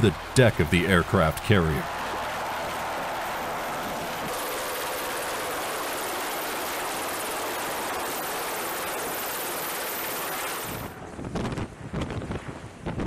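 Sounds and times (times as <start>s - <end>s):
helicopter running: 0.0s - 12.9s.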